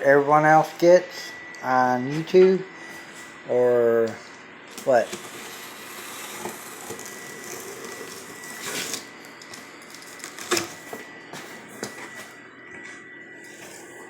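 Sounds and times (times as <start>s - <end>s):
cardboard rustling and scraping: 4.8s - 12.3s.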